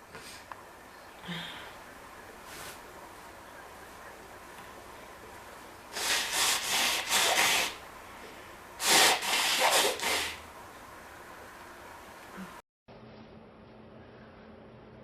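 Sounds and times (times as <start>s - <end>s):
person blowing nose: 5.9s - 7.8s, 8.8s - 10.4s.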